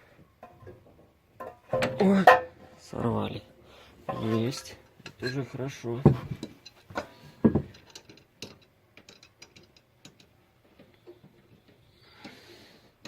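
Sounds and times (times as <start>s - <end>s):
light metallic knocks and clicks: 4.1s - 11.8s.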